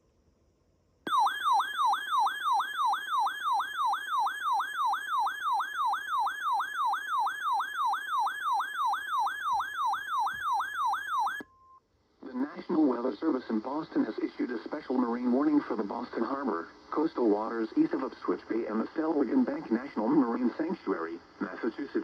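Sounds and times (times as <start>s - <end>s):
electronic siren alert tone: 1.1s - 11.8s.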